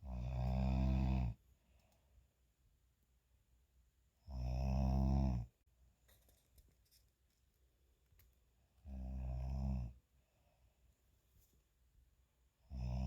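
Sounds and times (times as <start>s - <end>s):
loud rattling snores: 0.0s - 1.4s, 4.3s - 5.5s, 8.9s - 10.0s, 12.7s - 13.0s.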